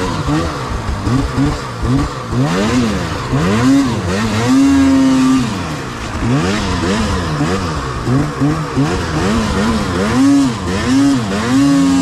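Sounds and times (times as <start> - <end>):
snowmobile engine revving: 0.0 - 12.0.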